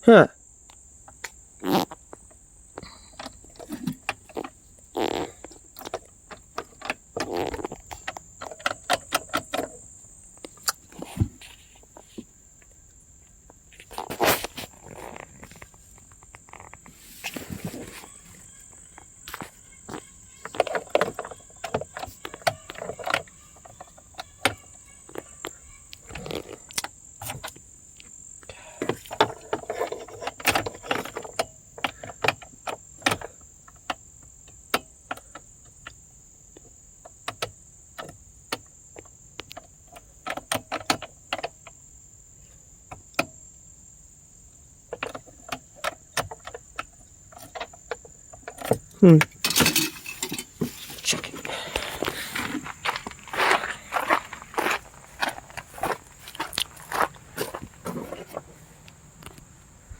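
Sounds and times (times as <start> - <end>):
high-pitched insect buzz: 4.9 - 5.4, 7.2 - 8.0, 16.5 - 27.2
rustling: 10.8 - 12.4, 13.6 - 21.4, 49.5 - 59.9.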